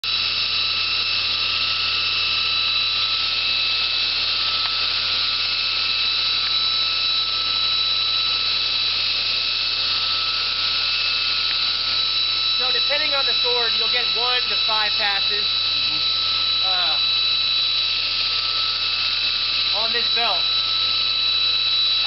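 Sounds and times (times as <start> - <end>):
belt grinder running: 0.0 - 22.0.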